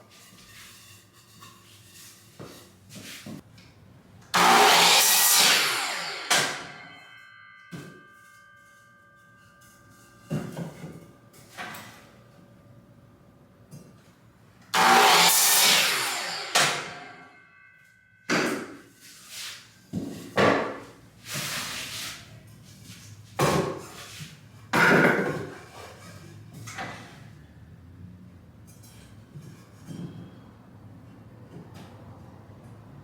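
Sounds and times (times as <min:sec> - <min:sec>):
power saw cutting wood: 0:04.3 - 0:07.2, 0:14.7 - 0:17.3
saw blade whining down: 0:04.4 - 0:09.9, 0:14.8 - 0:18.0.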